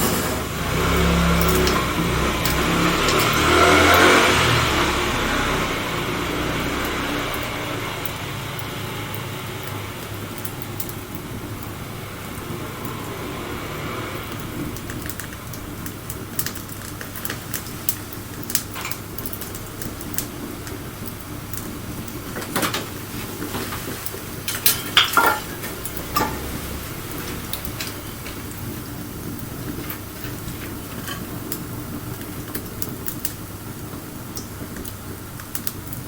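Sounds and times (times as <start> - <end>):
low rush of burning: 0.0 - 36.0
wood fire crackling and popping: 0.0 - 36.0.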